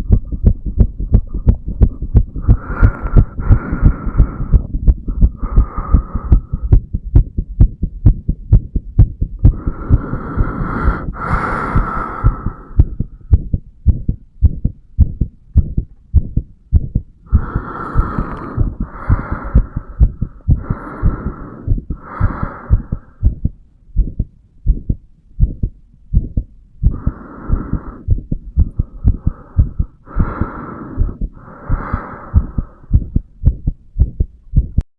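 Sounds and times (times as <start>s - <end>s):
heart beating: 0.0s - 34.9s
hissy breath sounds: 2.4s - 6.7s, 9.5s - 13.0s, 17.3s - 23.4s, 26.9s - 33.2s.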